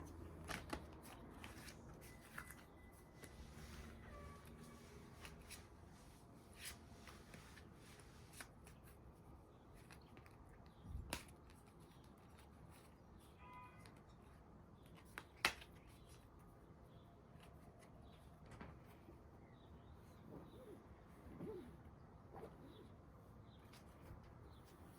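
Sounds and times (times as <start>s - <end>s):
cards being shuffled: 0.0s - 5.8s, 6.5s - 13.1s, 14.8s - 16.4s
card slap: 15.1s - 15.7s.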